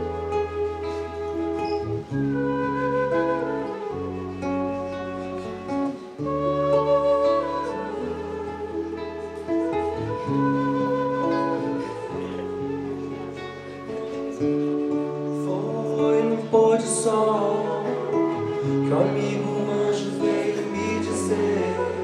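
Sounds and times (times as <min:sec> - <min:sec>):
bass notes: 0:00.0 - 0:13.9
acoustic guitar strummed and plucked: 0:00.0 - 0:22.0
person singing: 0:00.0 - 0:22.0.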